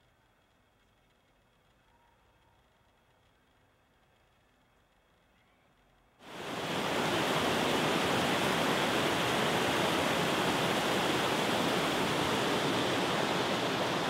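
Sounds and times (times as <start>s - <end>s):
river rushing: 6.2s - 14.0s.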